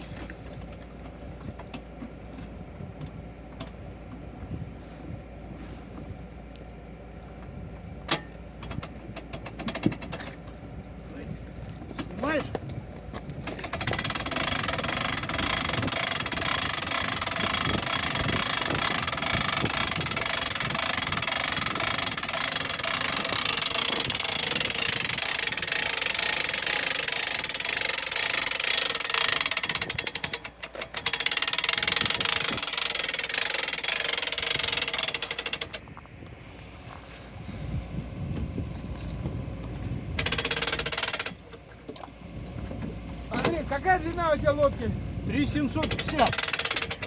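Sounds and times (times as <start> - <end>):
boat trailer winch winding: 0.0 - 4.3, 7.3 - 47.0.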